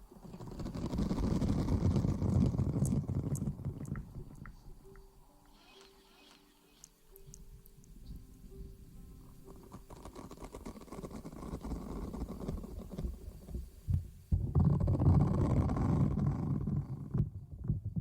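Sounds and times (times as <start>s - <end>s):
close rubbing and rustling: 9.4s - 13.6s.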